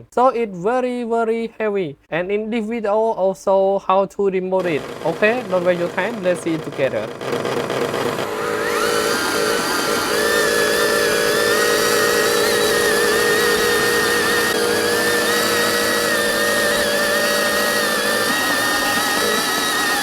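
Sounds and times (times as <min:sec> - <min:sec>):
electric motor and gears whining: 0:04.6 - 0:20.0.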